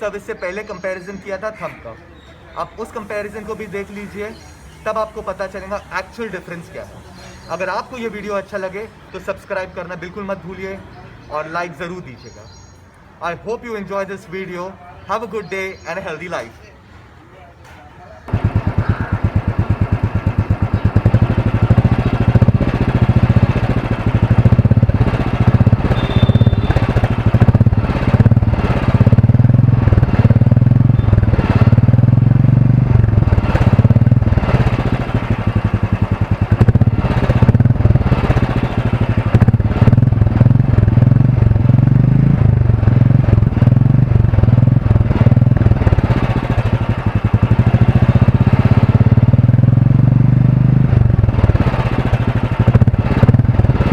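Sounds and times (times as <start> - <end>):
motorcycle engine thumping: 17.7 - 53.9.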